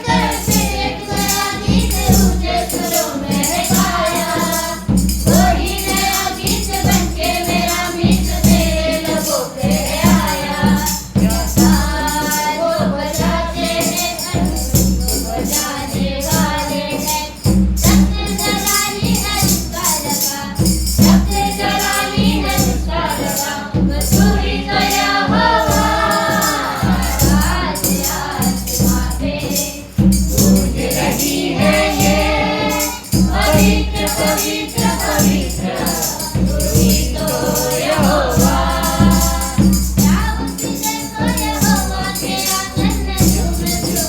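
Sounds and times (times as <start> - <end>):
tambourine: 0.0 - 44.0
voices singing: 0.0 - 44.0.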